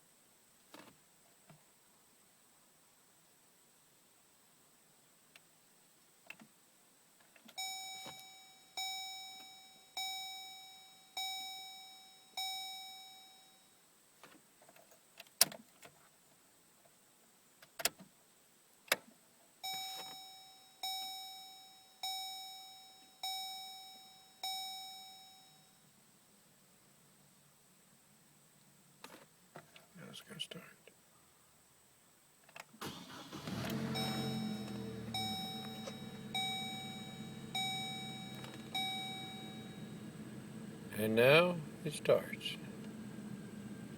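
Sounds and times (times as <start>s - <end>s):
dashboard warning chime dings: 7.6s - 13.6s, 19.6s - 25.6s, 33.3s - 43.9s.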